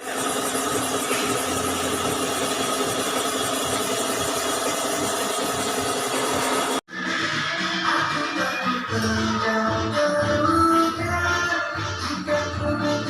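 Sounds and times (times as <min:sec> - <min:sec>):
workshop machine running: 0:00.0 - 0:06.9.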